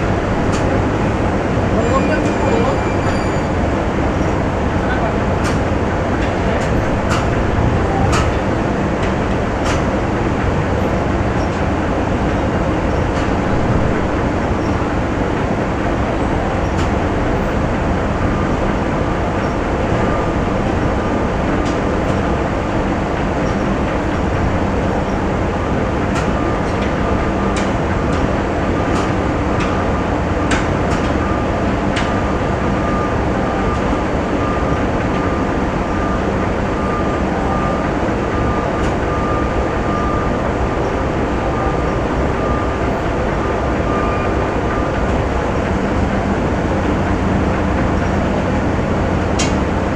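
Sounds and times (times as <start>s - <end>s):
factory machinery din: 0.0s - 49.9s
sharp clicks and knocks: 30.5s - 31.2s.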